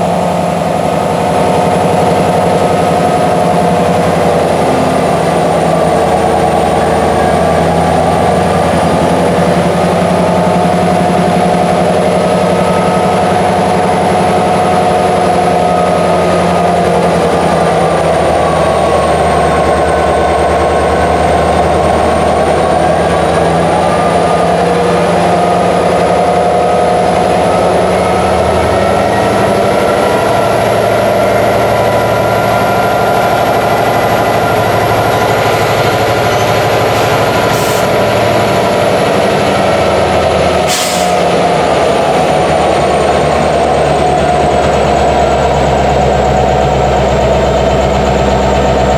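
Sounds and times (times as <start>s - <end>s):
diesel locomotive engine running: 0.0s - 48.9s
air hissing: 40.6s - 41.2s.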